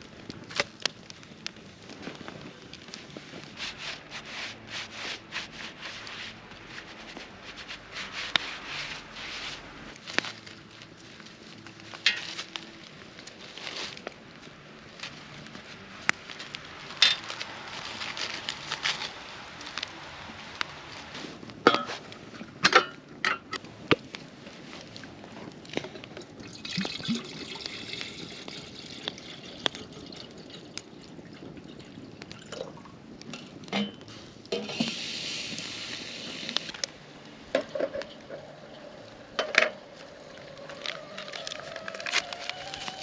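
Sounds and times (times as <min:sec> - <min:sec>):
water pouring into container: 0:26.4 - 0:32.9.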